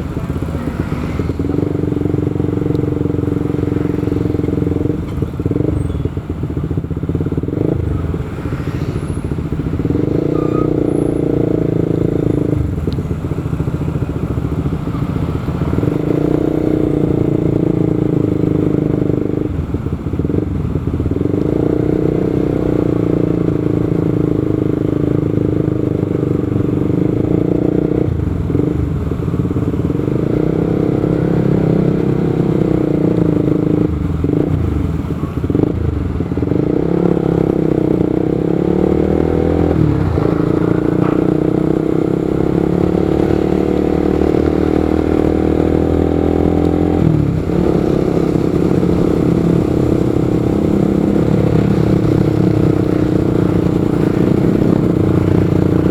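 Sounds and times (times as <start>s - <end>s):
motorcycle engine running: 0.0s - 55.9s
road noise: 0.0s - 55.9s.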